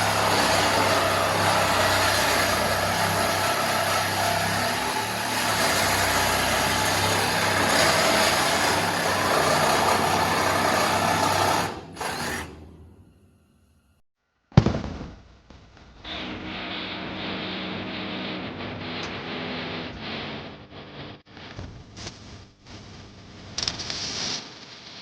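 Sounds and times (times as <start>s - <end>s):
grinding on car body metal: 0.0s - 12.8s.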